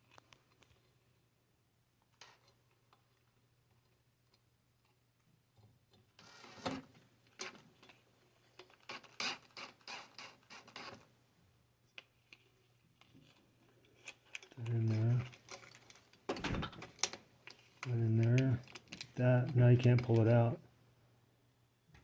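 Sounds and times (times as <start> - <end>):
plastic parts rubbing and rustling: 6.1 - 11.1, 12.0 - 20.6
plastic parts clicking: 13.0 - 20.4.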